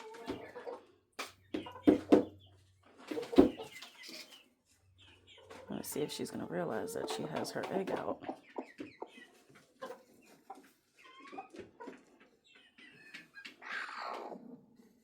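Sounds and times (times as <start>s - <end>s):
hen clucking: 0.0s - 14.6s
small knocks and rustles: 7.4s - 12.7s.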